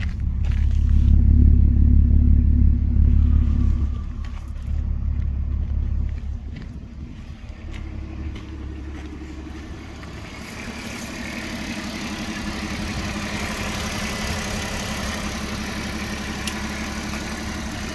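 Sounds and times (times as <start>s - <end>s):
car engine idling unevenly: 0.0s - 17.9s.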